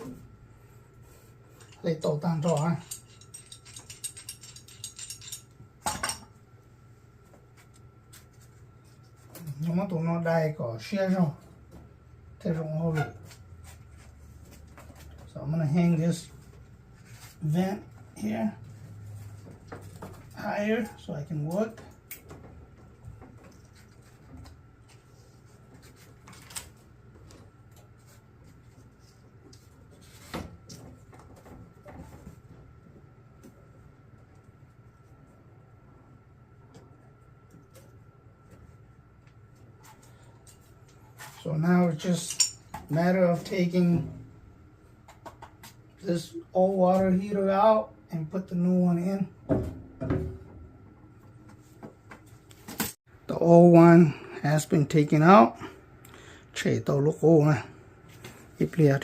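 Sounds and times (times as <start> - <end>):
metal parts clinking: 1.6 - 6.2, 42.1 - 42.7.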